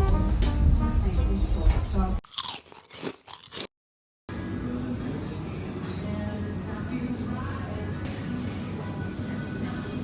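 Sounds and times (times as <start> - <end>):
faint music: 4.3 - 10.0.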